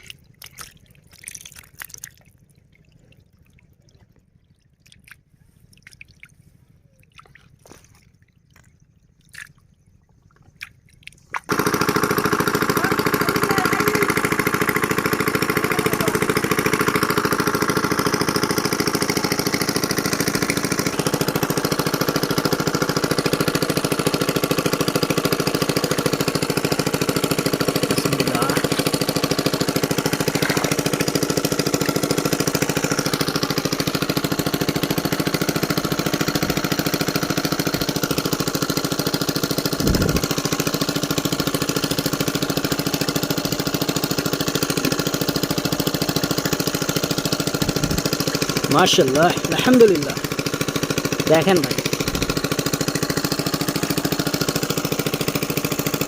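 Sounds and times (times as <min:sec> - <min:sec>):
water drips and splashes: 0:00.0 - 0:11.9
small engine running: 0:11.3 - 0:56.0.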